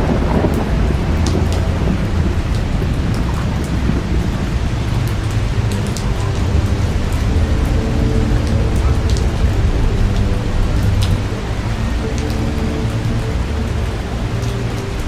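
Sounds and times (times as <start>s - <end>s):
heavy rain pouring: 0.0s - 15.0s
low thunder rumble: 0.0s - 15.0s
raindrops spattering: 0.0s - 15.0s.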